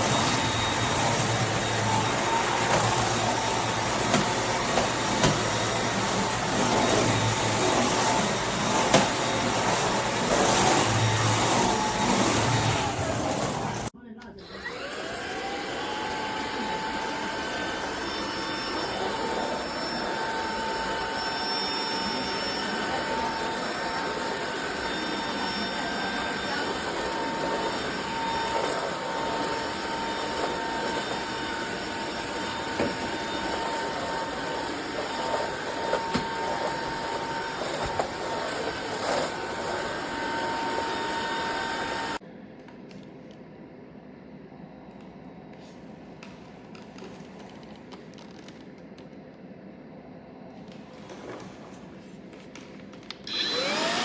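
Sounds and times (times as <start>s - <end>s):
stick vacuum running: 0.0s - 42.2s, 53.0s - 54.0s.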